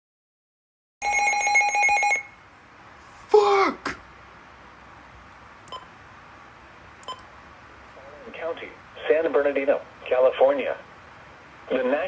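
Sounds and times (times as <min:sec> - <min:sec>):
click: 0:05.6 - 0:05.8
faint short beeps: 0:05.7 - 0:05.9, 0:07.0 - 0:07.2.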